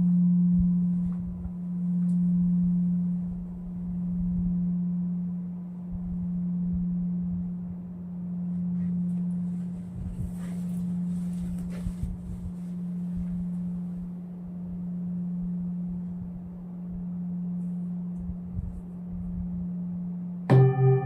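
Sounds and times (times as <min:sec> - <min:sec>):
rustles: 0:00.0 - 0:19.9
singing bowl low tone: 0:00.0 - 0:21.0.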